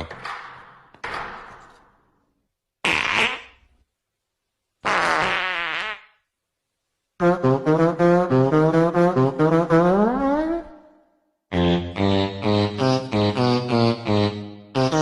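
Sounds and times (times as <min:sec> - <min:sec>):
fart sounds: 0:02.8 - 0:03.8, 0:04.8 - 0:06.3.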